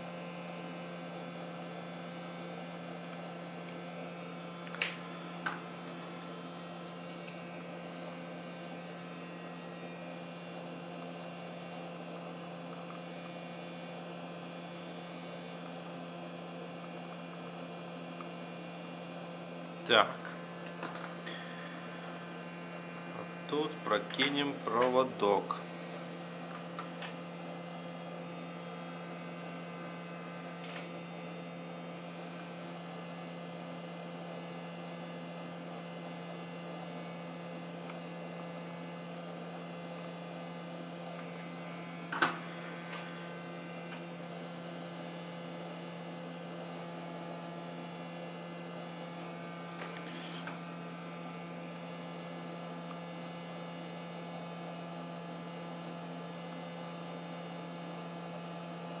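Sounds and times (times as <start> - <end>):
steady electrical hum: 0.0 - 59.0.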